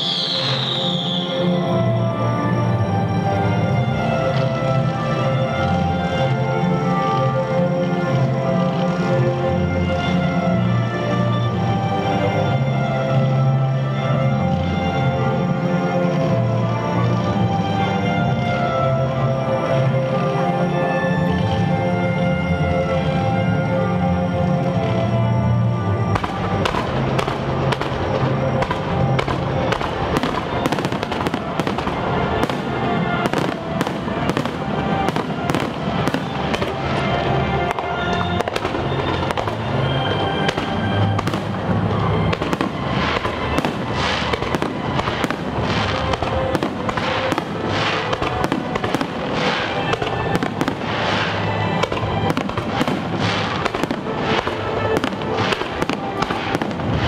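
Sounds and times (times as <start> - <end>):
fireworks shells bursting: 0.0 - 1.7, 26.1 - 57.0
music: 0.0 - 57.0.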